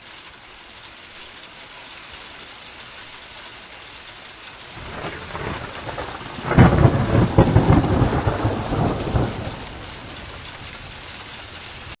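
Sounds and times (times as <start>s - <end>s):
steady rain: 0.0s - 12.0s
thunder rumbling and cracking: 4.7s - 12.0s.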